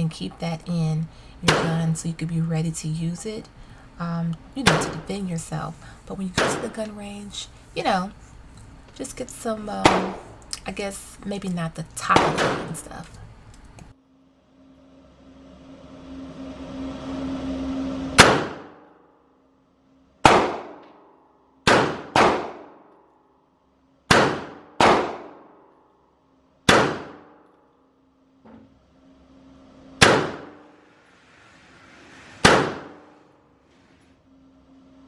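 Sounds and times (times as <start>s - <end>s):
handgun shots echoing indoors: 12.2s - 12.7s, 20.3s - 21.1s, 21.7s - 23.0s, 24.1s - 25.9s, 26.7s - 27.5s, 30.0s - 30.7s, 32.4s - 33.1s.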